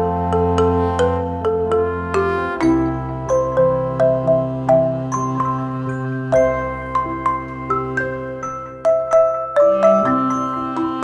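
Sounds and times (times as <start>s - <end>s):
held chord: 0.0s - 11.0s
mallet-like tune: 0.0s - 11.0s.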